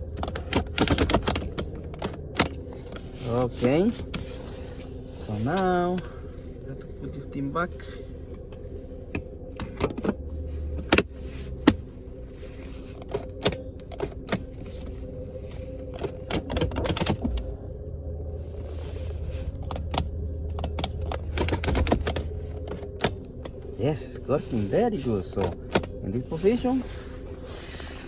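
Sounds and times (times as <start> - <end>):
steady low hum: 0.0 - 28.0
hard plastic parts clicking: 0.1 - 2.6.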